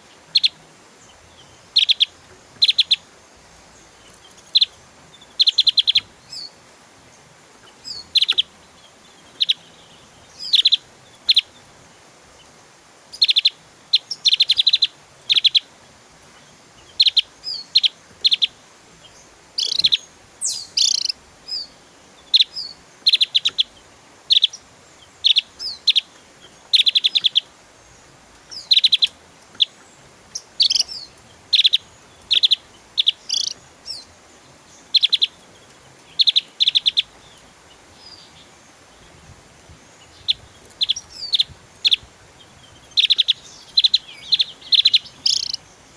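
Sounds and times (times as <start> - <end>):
bird singing rapid high notes: 30.3 - 34.1, 42.8 - 45.6.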